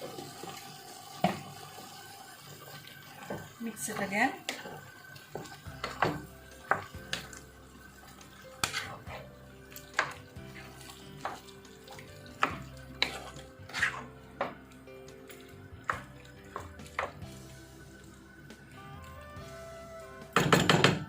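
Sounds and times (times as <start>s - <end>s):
background music: 3.6s - 21.0s
spatula scraping a metal pan: 8.6s - 9.3s, 12.4s - 14.2s.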